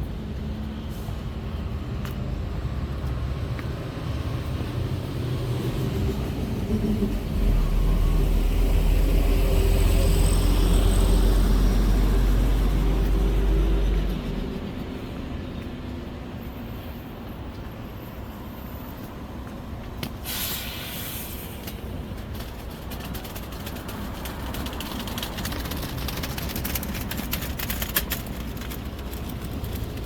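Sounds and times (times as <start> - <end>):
rumble of passing vehicles: 0.0 - 30.0
short hiss: 20.2 - 21.8.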